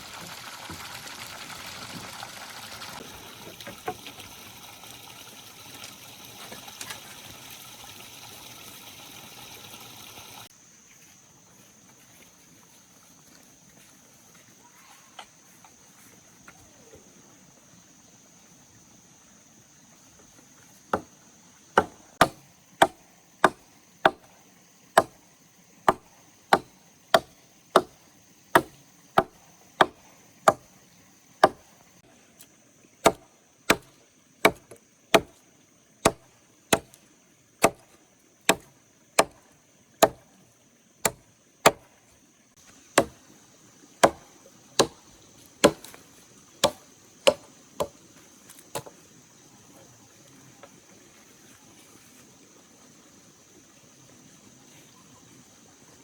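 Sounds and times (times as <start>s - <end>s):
wood being chopped: 21.8s - 24.3s, 25.0s - 25.2s, 25.9s - 28.0s, 28.6s - 30.7s, 31.4s - 31.7s, 33.0s - 35.4s, 36.0s - 37.0s, 37.6s - 39.4s, 40.0s - 40.2s, 41.0s - 41.9s, 43.0s - 43.2s, 44.0s - 45.0s, 45.6s - 46.0s, 46.6s - 48.0s, 48.7s - 49.0s.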